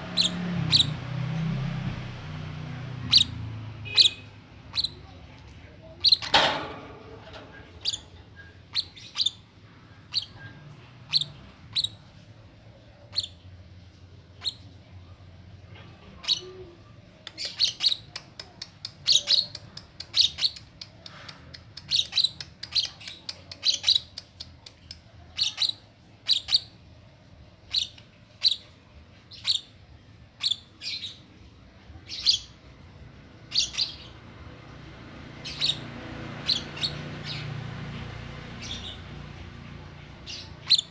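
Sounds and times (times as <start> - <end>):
lovebird chirping: 0.2 - 1.0, 3.1 - 5.2, 6.0 - 9.4, 35.4 - 35.8, 40.2 - 40.9.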